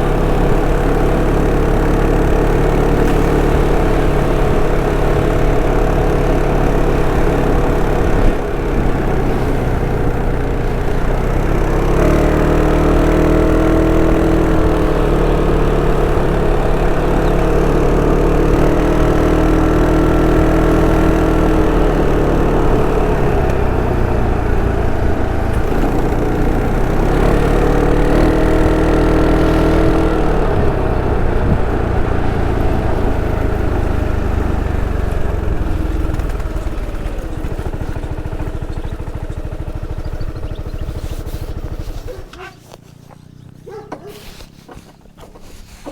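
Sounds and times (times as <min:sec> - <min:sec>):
scooter engine running: 0:00.0 - 0:45.9.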